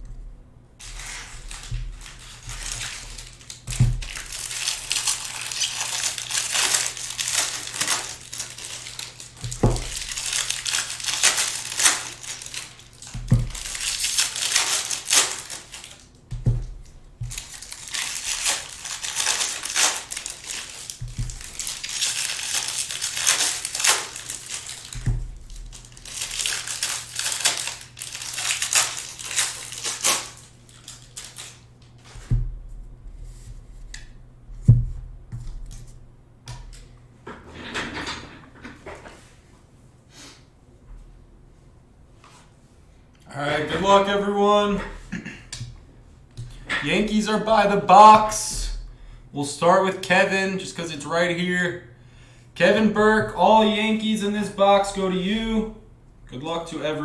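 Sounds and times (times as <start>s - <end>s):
plastic wrapping crinkling: 0.8s - 32.5s, 46.4s - 48.9s
soft thumps: 16.3s - 17.4s.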